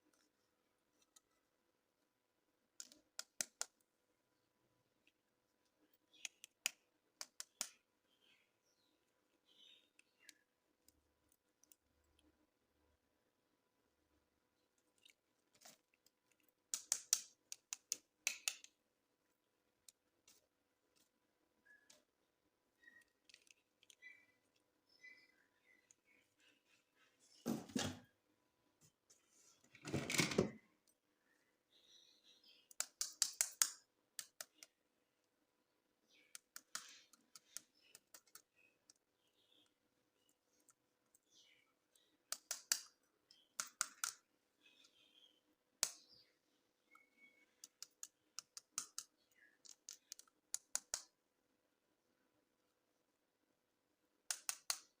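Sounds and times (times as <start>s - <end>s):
plastic toy parts clicking: 32.7s - 34.7s.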